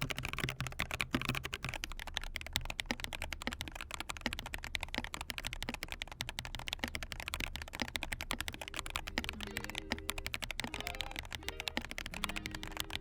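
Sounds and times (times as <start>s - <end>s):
mechanical keyboard typing: 0.0s - 13.0s
soft background music: 8.8s - 13.0s.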